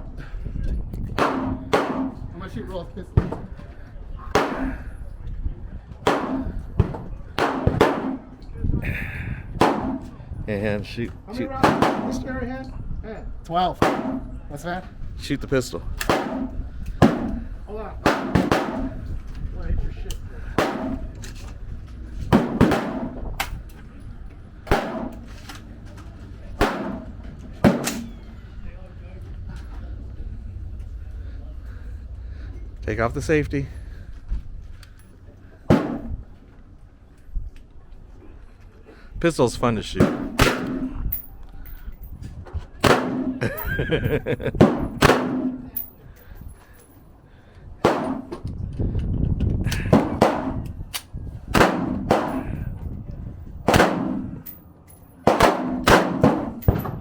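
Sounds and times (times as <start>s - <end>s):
pistol shots with echo: 1.2s - 2.2s, 4.4s - 4.9s, 6.0s - 6.6s, 7.4s - 8.3s, 9.6s - 10.1s, 13.8s - 14.3s, 16.0s - 17.4s, 18.0s - 19.0s, 20.6s - 21.0s, 22.3s - 23.2s, 24.7s - 25.2s, 26.6s - 28.1s, 40.0s - 41.0s, 42.8s - 43.4s, 44.6s - 45.6s, 51.5s - 52.6s, 53.7s - 54.4s, 55.3s - 57.0s
faint gunshot: 26.6s - 28.1s.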